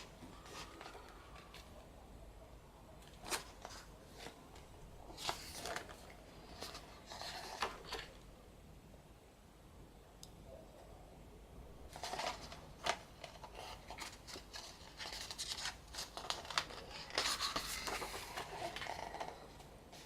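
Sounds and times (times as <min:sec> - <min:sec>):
book pages turning: 0:00.0 - 0:01.8, 0:03.0 - 0:08.2, 0:11.9 - 0:20.0.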